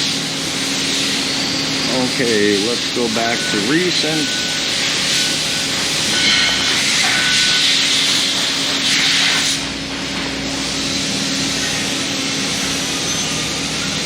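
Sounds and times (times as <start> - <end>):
low machinery hum: 0.0 - 8.8
machinery hiss: 0.0 - 13.9.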